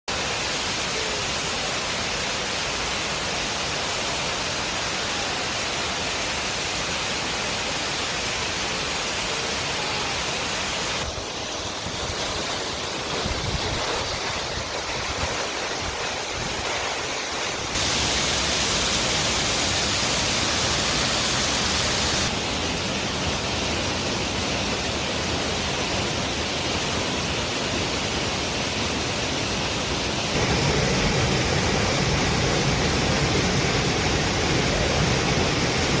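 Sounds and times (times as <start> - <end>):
waterfall rushing: 0.1 - 36.0.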